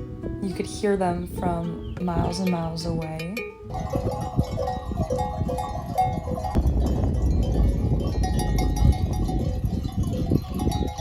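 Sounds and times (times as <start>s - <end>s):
cowbells clanking: 2.2s - 11.0s.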